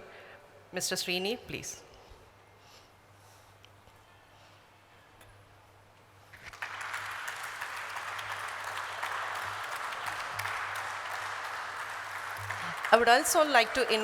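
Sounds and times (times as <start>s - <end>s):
audience applauding: 6.3s - 14.0s.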